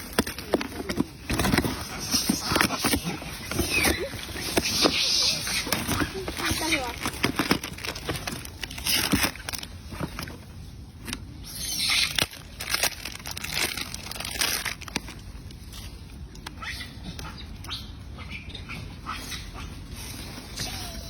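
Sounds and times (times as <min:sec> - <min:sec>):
rustling: 0:00.0 - 0:16.5.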